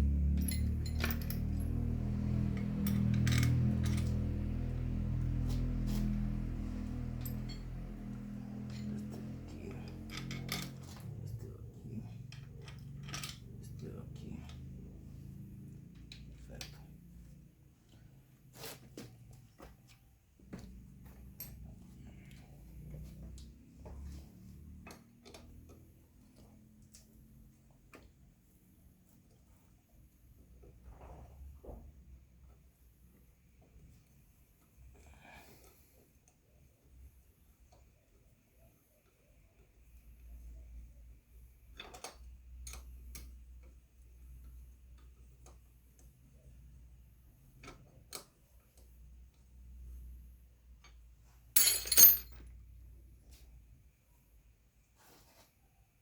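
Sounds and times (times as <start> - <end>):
low steady hum: 0.0 - 17.5, 51.6 - 52.4
tools and metal parts clicking: 0.2 - 1.8, 2.4 - 4.4, 7.1 - 11.1, 12.3 - 13.8, 51.6 - 52.4
small metal parts clicking: 0.3 - 1.7, 2.5 - 4.2, 51.6 - 52.4.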